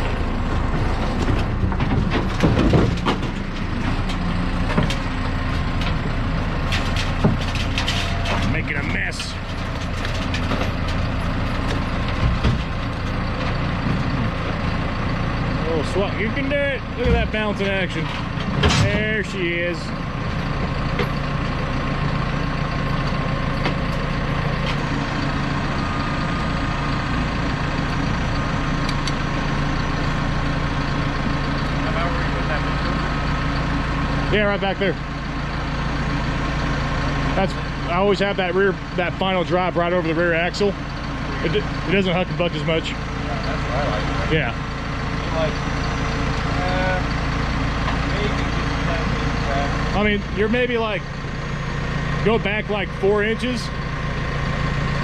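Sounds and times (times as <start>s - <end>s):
steel tracks clanking on deck: 0.0s - 14.1s, 17.0s - 19.5s
diesel engine under load: 0.0s - 55.0s.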